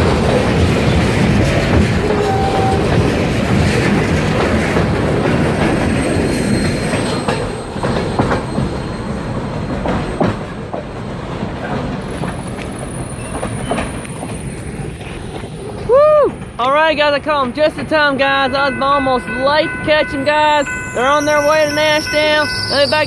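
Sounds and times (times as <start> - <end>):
train wheels clicking over rail joints: 0.0 - 17.0
high wheel squeal: 5.7 - 9.4, 20.5 - 23.0.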